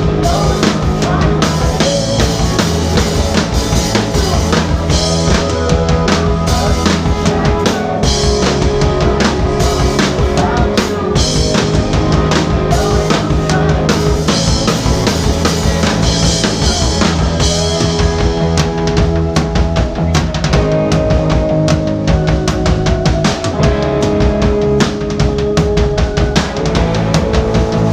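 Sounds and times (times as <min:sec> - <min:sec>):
amplified guitar and bass: 0:00.0 - 0:27.9
drum kit beat: 0:00.0 - 0:27.9.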